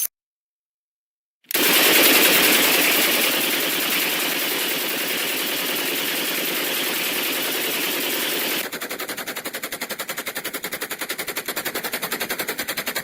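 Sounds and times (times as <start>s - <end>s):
machine gun firing: 1.5s - 13.0s.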